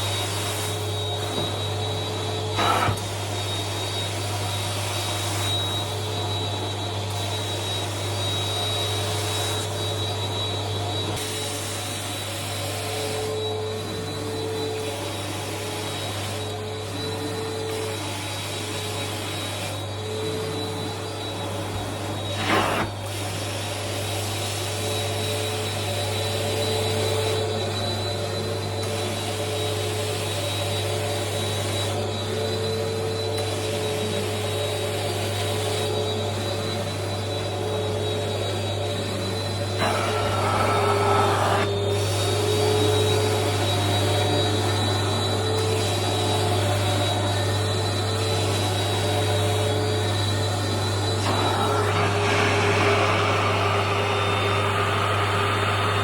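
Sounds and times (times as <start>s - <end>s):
carpet cleaning machine droning: 0.0s - 56.0s.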